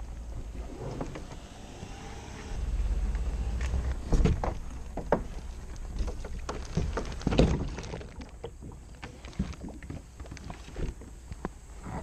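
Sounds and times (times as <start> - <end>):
kayak paddle splashes and knocks: 4.1 - 11.5.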